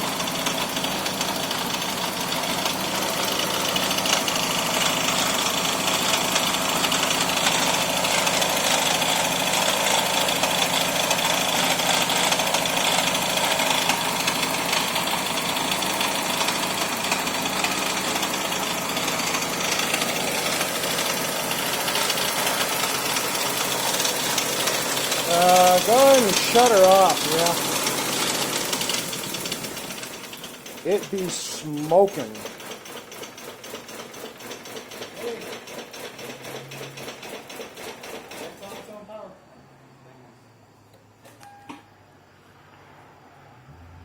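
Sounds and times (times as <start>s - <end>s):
car engine idling roughly: 0.0s - 38.7s
dense fast ticking: 11.4s - 35.8s.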